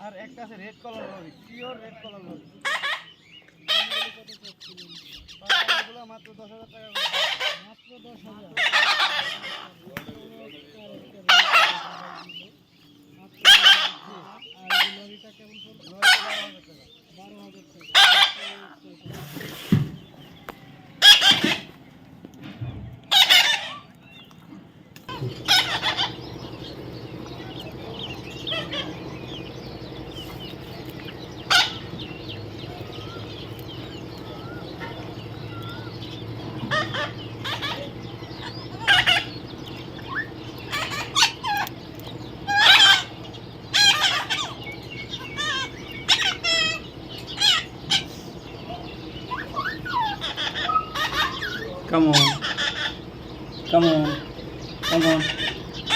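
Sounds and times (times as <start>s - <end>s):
parrots screeching: 2.6s - 6.1s, 6.8s - 7.8s, 8.5s - 9.8s, 11.1s - 12.6s, 13.4s - 15.2s, 15.8s - 16.8s, 17.8s - 19.0s, 20.2s - 21.8s, 23.0s - 24.4s, 25.1s - 55.9s
steady low hum: 19.0s - 55.9s.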